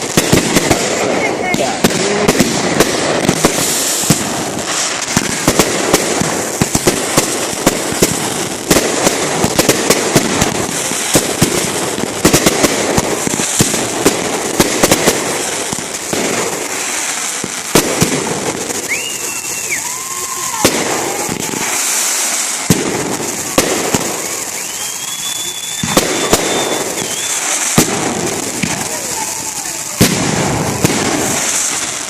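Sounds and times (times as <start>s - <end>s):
fireworks bangs: 0.0s - 32.0s
fireworks crackling: 0.0s - 32.0s.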